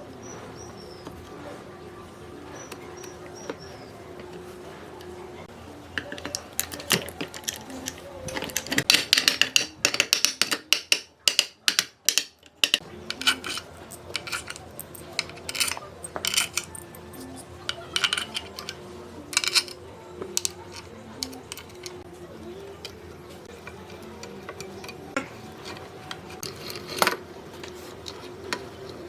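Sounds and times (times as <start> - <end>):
faint background music: 0.0 - 29.0
metal parts clicking and clinking: 6.0 - 22.0.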